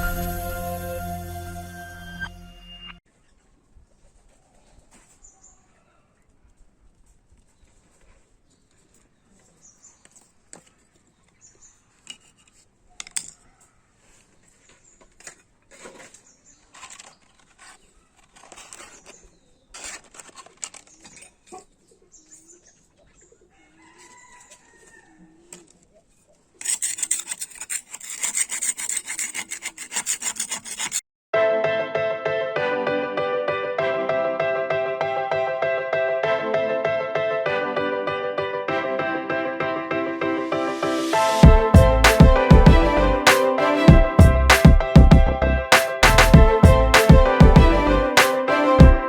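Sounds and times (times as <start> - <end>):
hand tools knocking and scraping: 26.6 - 31.0
loud fast scraping: 26.6 - 31.0, 45.7 - 48.9.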